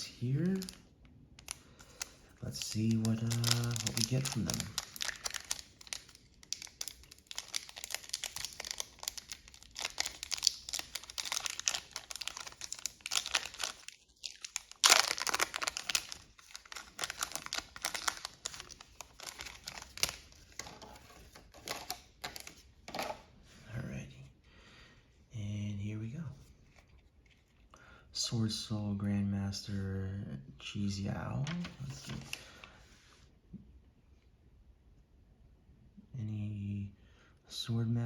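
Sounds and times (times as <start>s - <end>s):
foil wrappers crinkling: 0.0s - 0.8s, 1.4s - 22.6s.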